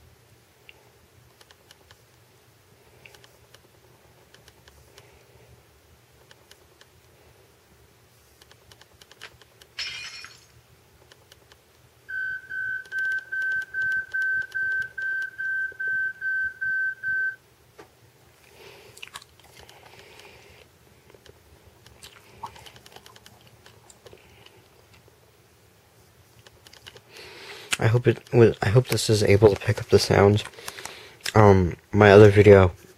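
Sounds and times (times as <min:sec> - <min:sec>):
electronic alarm beeps: 0:12.1 - 0:17.4.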